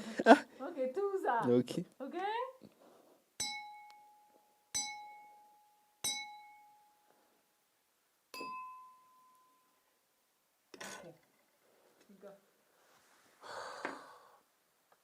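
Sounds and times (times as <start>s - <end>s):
ringing dings: 3.4s - 7.0s, 8.3s - 9.8s.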